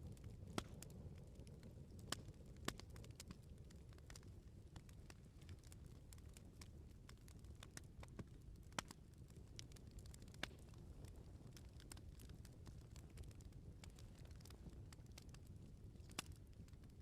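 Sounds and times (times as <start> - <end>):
bonfire crackling: 0.0 - 17.0.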